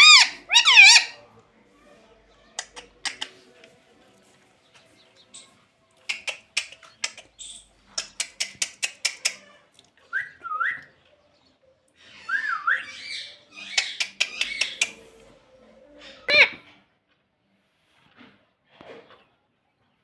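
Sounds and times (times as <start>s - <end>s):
parrot clicking: 2.6s - 3.3s, 6.0s - 7.3s, 8.0s - 9.4s, 13.7s - 15.0s.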